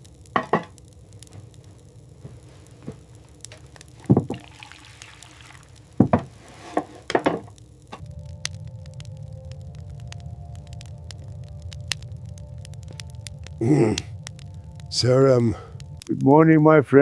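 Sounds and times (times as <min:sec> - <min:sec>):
water splashing and pouring: 0:04.0 - 0:06.6.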